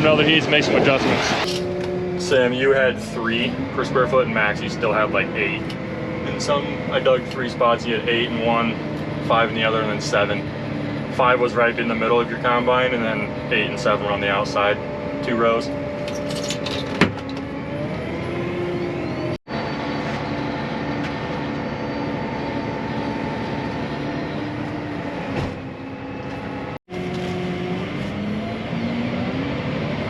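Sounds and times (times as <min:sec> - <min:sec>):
farm machinery engine running: 0:17.2 - 0:28.9.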